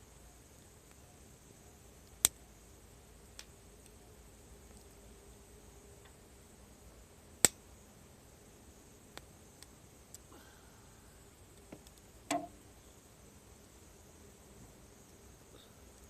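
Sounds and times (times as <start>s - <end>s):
firewood crackling in campfire: 1.8s - 5.4s, 6.0s - 16.0s
loud wood pop: 12.3s - 12.6s.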